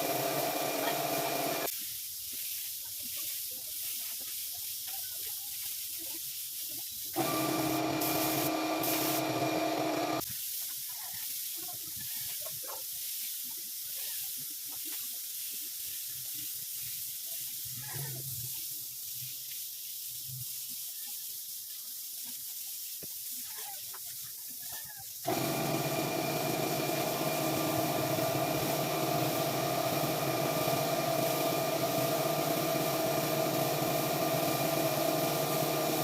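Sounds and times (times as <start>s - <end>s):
compressed air hissing: 7.0s - 10.4s, 25.1s - 36.0s.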